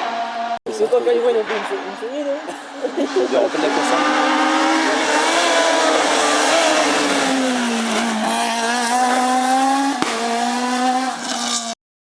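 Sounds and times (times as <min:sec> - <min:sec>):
rally car engine at high revs: 0:02.5 - 0:11.8.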